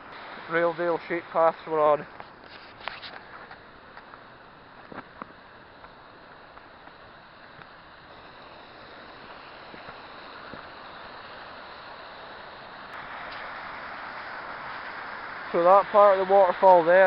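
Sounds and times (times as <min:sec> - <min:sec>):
waterfall rushing: 0:00.0 - 0:02.2, 0:03.6 - 0:17.0
footstep scuffs: 0:02.1 - 0:04.2.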